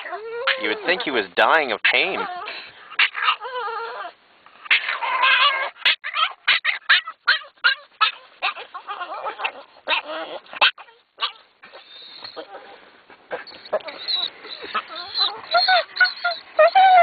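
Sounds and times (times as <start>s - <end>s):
dog whining: 0.0s - 1.1s, 1.9s - 17.0s
dog yipping: 3.0s - 12.6s, 13.3s - 17.0s.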